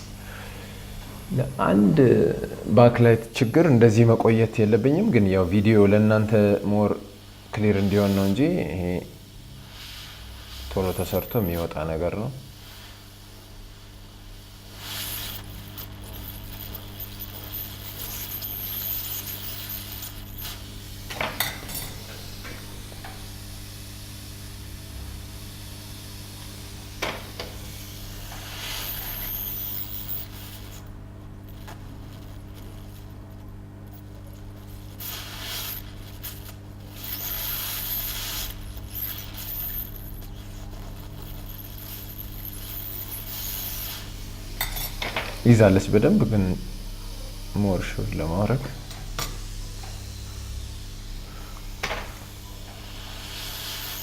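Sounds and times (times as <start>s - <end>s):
hot-air gun hissing: 0.0s - 54.0s
low electrical hum: 0.0s - 54.0s.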